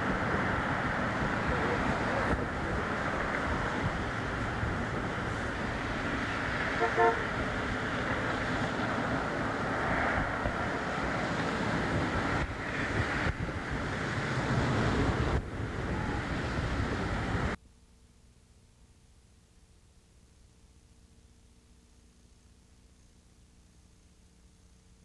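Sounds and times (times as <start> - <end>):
street traffic: 0.0 - 17.6
car horn toot: 6.8 - 7.3
faint hum: 15.4 - 25.0.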